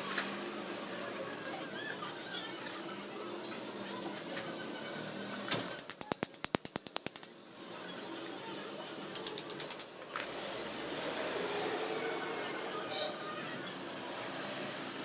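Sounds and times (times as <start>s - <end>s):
ratchet wrench clicking: 5.7s - 7.3s, 9.2s - 9.9s.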